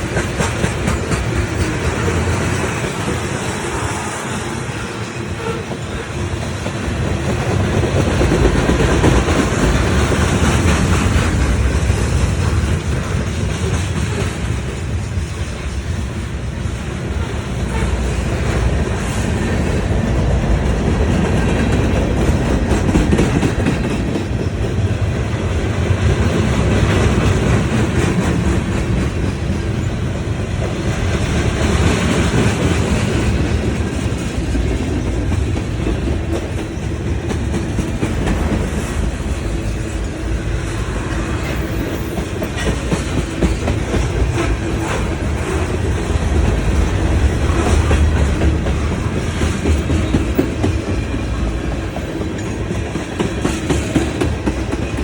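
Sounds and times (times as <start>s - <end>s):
wheels clattering over rails: 0.0s - 4.8s
train rumbling: 0.0s - 55.0s.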